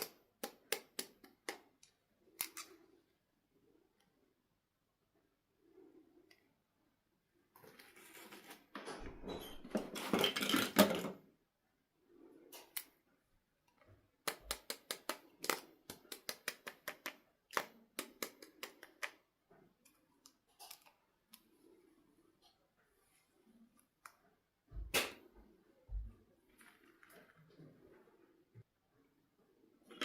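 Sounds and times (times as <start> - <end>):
packaging rustling and scraping: 7.6 - 8.8.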